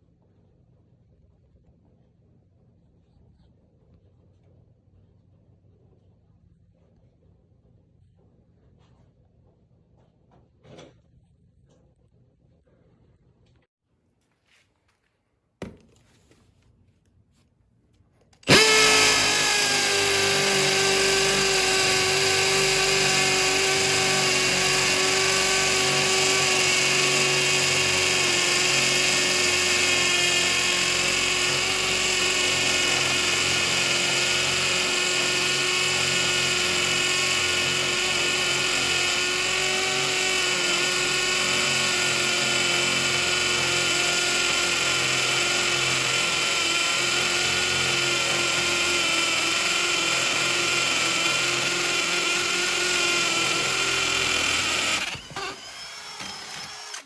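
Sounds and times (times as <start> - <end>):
hammer drill boring into concrete: 18.4 - 57.0.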